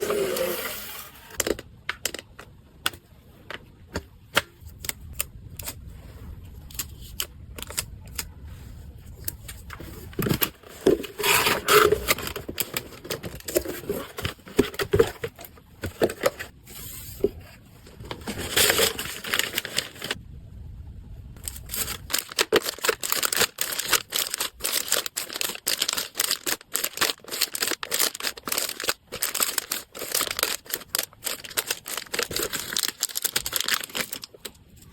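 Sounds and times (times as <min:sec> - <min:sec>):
packaging crinkling and tearing: 0:09.4 - 0:16.5, 0:18.0 - 0:20.2, 0:21.4 - 0:34.9.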